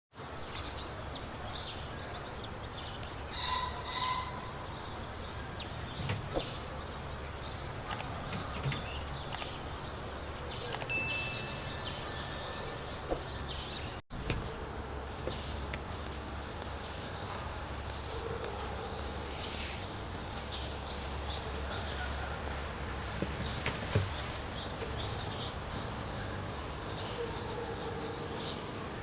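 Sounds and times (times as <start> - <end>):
incubator humming and whining: 0.4 - 14.0.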